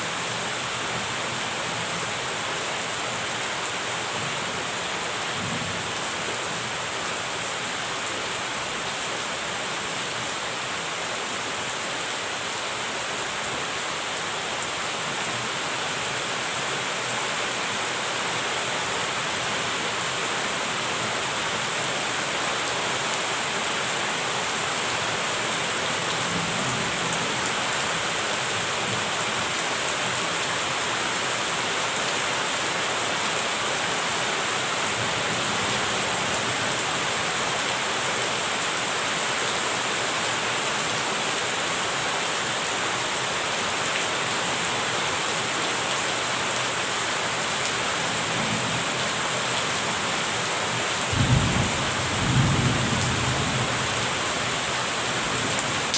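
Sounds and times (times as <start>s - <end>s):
steady rain: 0.0s - 55.9s
distant thunder rumbles: 51.1s - 54.1s.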